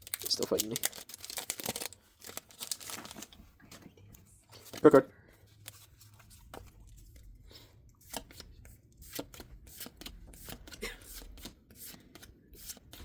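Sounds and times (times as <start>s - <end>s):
trading cards flipped by hand: 8.0s - 13.0s.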